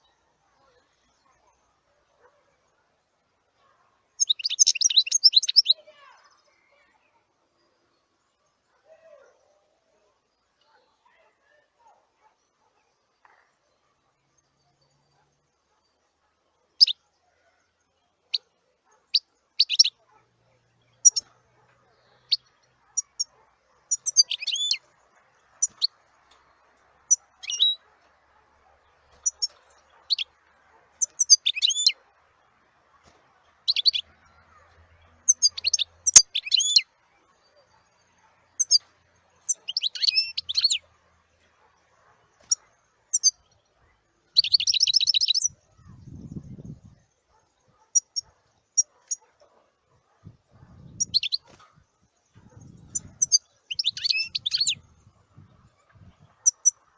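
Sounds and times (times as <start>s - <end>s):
small songbird chirping: 4.2s - 11.2s, 12.3s - 27.8s, 28.8s - 32.0s, 33.0s - 40.9s, 41.8s - 49.3s, 50.2s - 56.9s.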